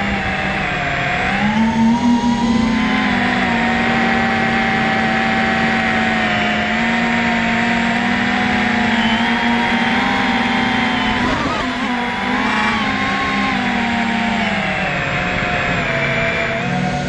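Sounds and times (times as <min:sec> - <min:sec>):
drone motors humming: 0:00.0 - 0:17.0.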